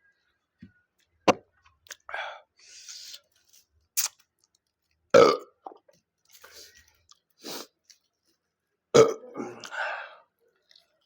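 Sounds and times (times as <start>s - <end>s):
chewing and wet mouth sounds: 2.8s - 5.0s, 10.6s - 11.0s.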